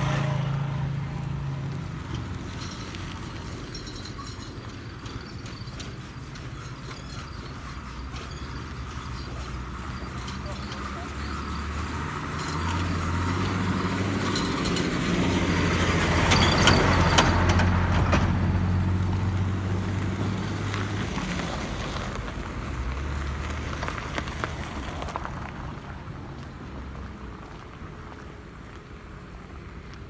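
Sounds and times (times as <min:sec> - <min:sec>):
vehicle passing by: 0:00.0 - 0:03.6, 0:08.1 - 0:27.5.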